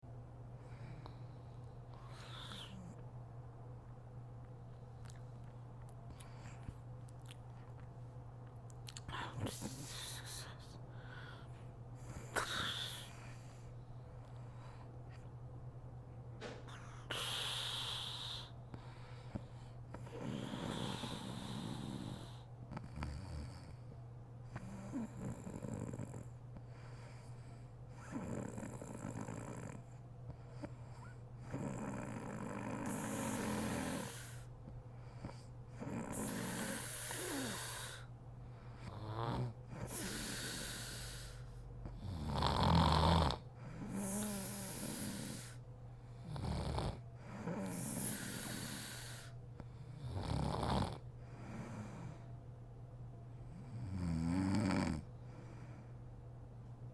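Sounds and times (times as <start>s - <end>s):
woman snoring: 2.0s - 3.0s, 12.1s - 13.4s, 16.7s - 18.5s, 20.0s - 23.8s, 24.6s - 26.3s, 28.0s - 29.9s, 30.6s - 34.5s, 35.2s - 38.1s, 38.8s - 41.4s, 42.0s - 45.6s, 46.2s - 49.3s, 50.0s - 52.1s, 53.7s - 55.1s.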